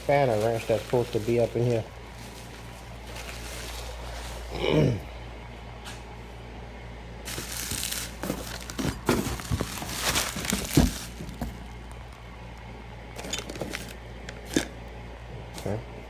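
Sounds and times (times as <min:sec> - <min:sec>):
packing material crinkling: 0:00.0 - 0:04.6, 0:07.3 - 0:12.6, 0:13.2 - 0:14.6
steady low hum: 0:00.0 - 0:16.0.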